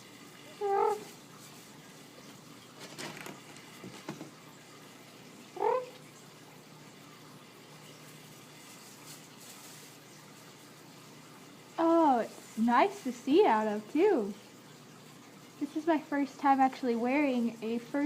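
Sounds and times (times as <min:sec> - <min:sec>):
soft rustling and handling: 0:08.5 - 0:10.5.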